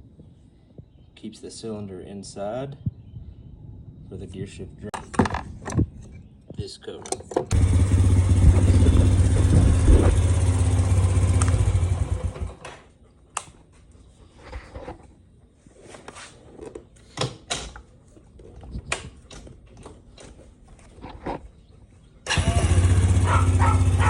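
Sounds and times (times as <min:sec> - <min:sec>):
small engine running: 0:07.5 - 0:12.6, 0:22.3 - 0:24.0.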